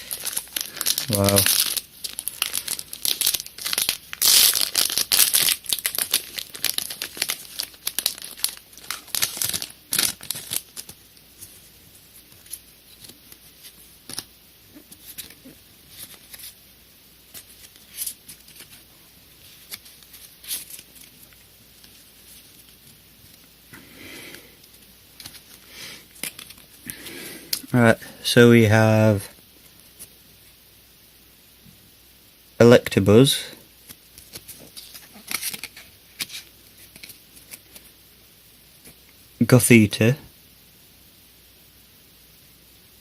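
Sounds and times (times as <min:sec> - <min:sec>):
foil wrapper crinkling: 0:00.0 - 0:11.6, 0:25.2 - 0:27.7, 0:33.8 - 0:37.9
cards being handled: 0:12.2 - 0:16.6, 0:17.3 - 0:23.4, 0:25.2 - 0:27.7, 0:33.8 - 0:37.9.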